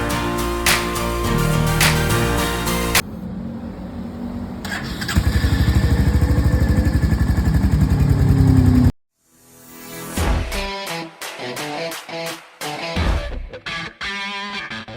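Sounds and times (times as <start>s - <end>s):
motorcycle engine starting and running: 3.2s - 9.0s.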